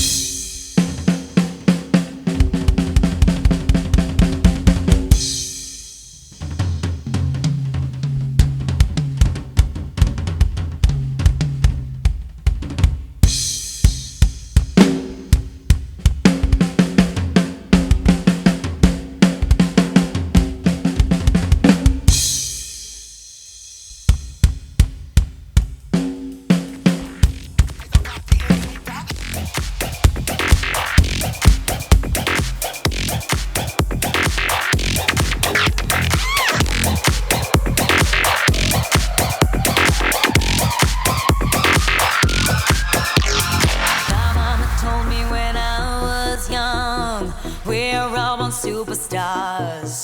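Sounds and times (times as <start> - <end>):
dance music drum beat: 0.0 - 6.5, 24.0 - 50.0
steady bass line: 27.0 - 50.0.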